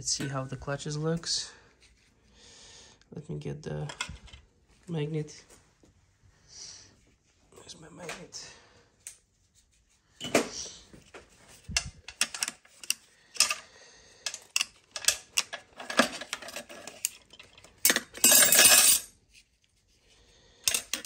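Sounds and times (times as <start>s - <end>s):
metal tools clinking: 14.2s - 19.1s, 20.7s - 21.0s.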